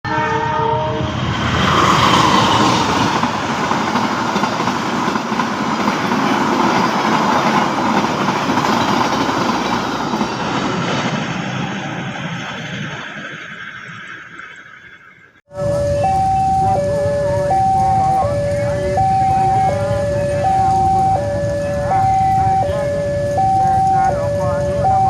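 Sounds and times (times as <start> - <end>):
train wheels rumbling over rails: 1.0 - 13.1, 15.5 - 25.0
brief pitched tone: 15.5 - 25.0.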